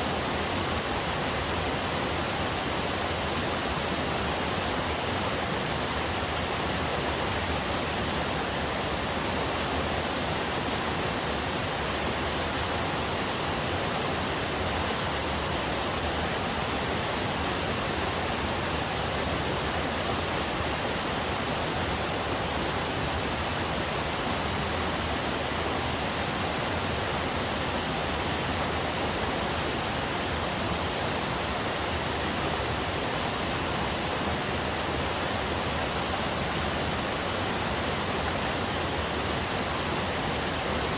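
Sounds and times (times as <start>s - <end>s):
small waterfall rushing: 0.0s - 40.9s.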